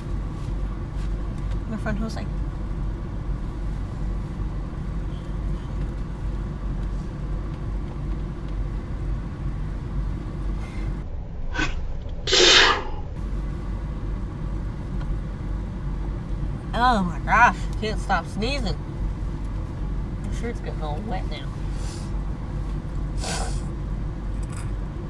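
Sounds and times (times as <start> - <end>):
car cabin rumble: 0.0 - 25.0.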